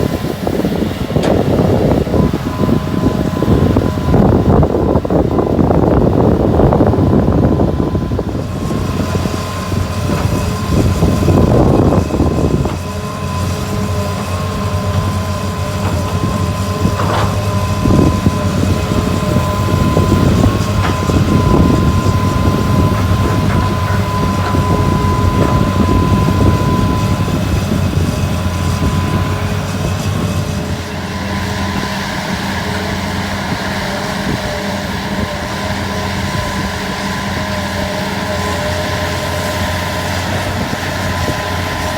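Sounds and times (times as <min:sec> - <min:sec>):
dump truck: 0:00.0 - 0:41.9
excavator engine running: 0:00.0 - 0:41.9
high whine: 0:16.9 - 0:32.4.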